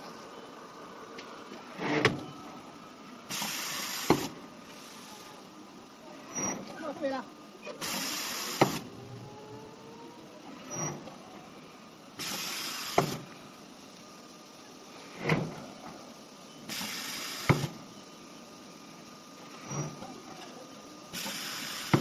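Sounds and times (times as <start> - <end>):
air hiss: 3.3 - 5.4, 7.8 - 8.9, 12.2 - 13.2, 16.7 - 17.8, 21.1 - 22.0.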